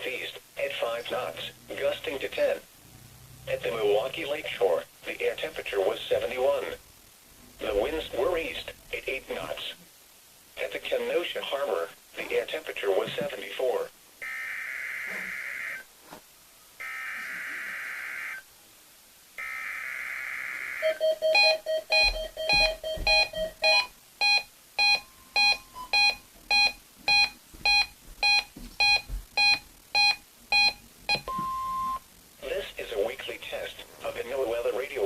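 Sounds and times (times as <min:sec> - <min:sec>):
weather radio alert beeping: 0:28.9 - 0:32.0.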